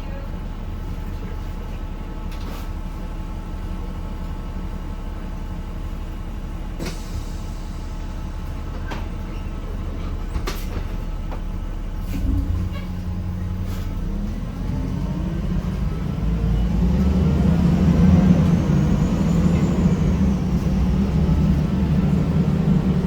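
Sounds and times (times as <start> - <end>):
bus diesel engine humming: 0.0 - 23.0
bus body rattling: 6.6 - 23.0.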